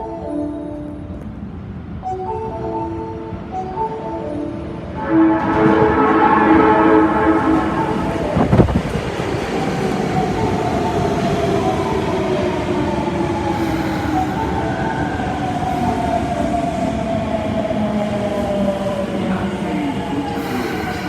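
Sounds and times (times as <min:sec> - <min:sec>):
subway train rumble and whine: 0:00.0 - 0:21.0
subway train thud: 0:05.0 - 0:18.6.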